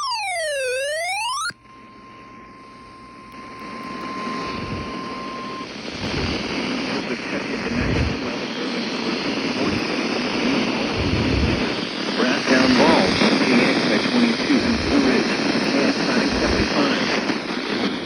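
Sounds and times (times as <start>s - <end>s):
weather radio alarm tone: 0.0s - 6.5s, 12.5s - 18.0s
radio receiver hiss and static: 0.0s - 18.0s.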